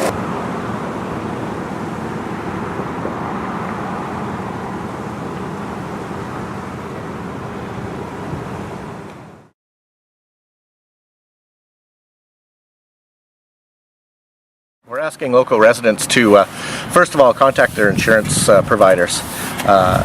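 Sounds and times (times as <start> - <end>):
outdoor low hum: 0.0 - 9.6.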